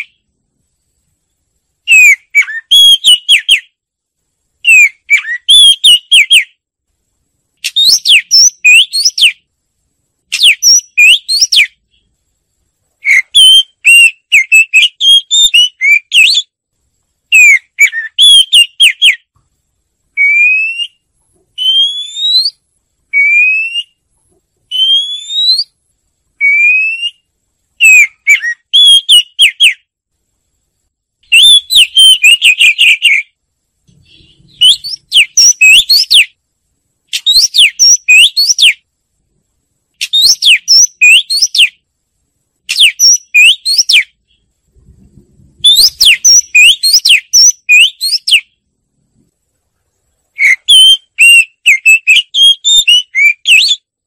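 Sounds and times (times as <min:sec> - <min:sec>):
bird singing whistled phrases: 0:01.9 - 0:03.8, 0:04.6 - 0:06.5, 0:07.6 - 0:09.4, 0:10.3 - 0:11.8, 0:13.0 - 0:16.5, 0:17.3 - 0:19.3, 0:20.2 - 0:21.0, 0:21.6 - 0:24.0, 0:24.7 - 0:25.8, 0:26.4 - 0:29.9, 0:31.3 - 0:33.4, 0:34.0 - 0:36.4, 0:37.2 - 0:38.8, 0:40.0 - 0:41.8, 0:42.7 - 0:44.2, 0:45.6 - 0:48.5, 0:50.4 - 0:53.9.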